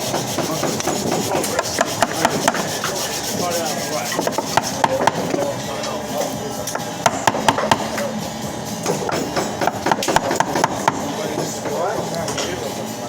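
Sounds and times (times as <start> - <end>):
chisel scraping wood: 0.0 - 5.5.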